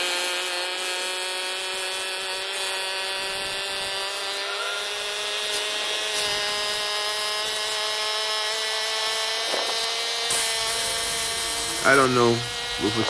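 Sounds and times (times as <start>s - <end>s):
angle grinder cutting road surface: 0.0s - 13.0s.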